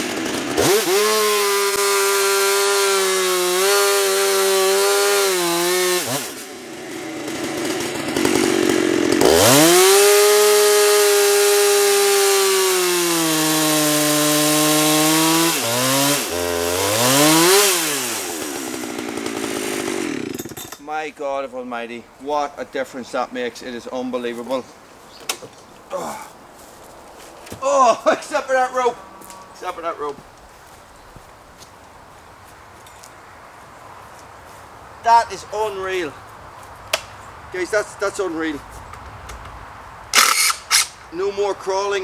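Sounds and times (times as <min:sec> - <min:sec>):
chainsaw cutting a log: 0:00.0 - 0:20.8, 0:40.1 - 0:41.0.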